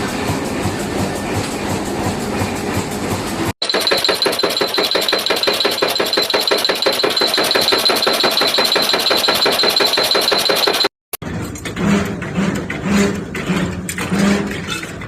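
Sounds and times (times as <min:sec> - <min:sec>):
machine clattering: 0:00.5 - 0:12.2
high-pitched machine whine: 0:03.6 - 0:10.9.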